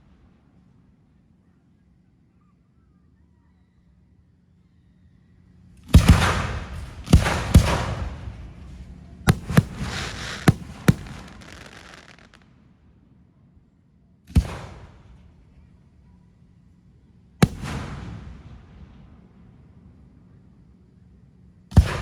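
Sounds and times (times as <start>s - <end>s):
fireworks bangs: 9.3s - 12.4s.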